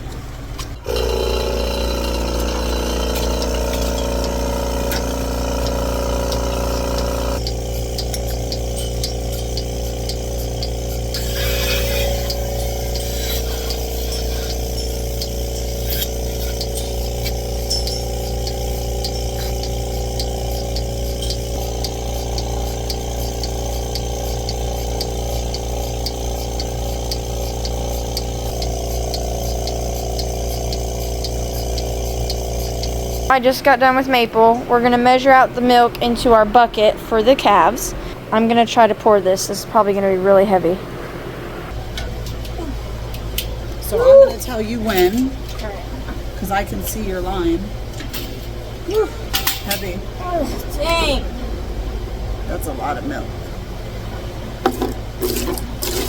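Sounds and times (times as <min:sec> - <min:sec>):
milking machine motor hum: 0:00.0 - 0:56.0
pulsator ticks: 0:00.1 - 0:38.2
hissing: 0:00.7 - 0:33.5.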